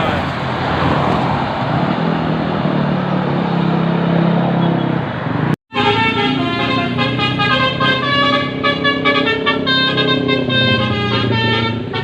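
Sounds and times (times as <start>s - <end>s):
road traffic noise: 0.0s - 12.0s
multi-tone bus air horn tune: 5.7s - 12.0s.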